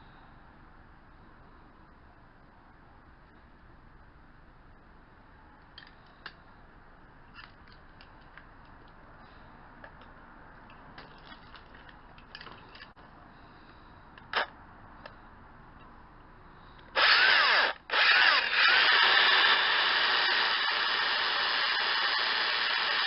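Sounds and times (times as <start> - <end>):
small parts clicking and knocking: 9.8 - 13.0.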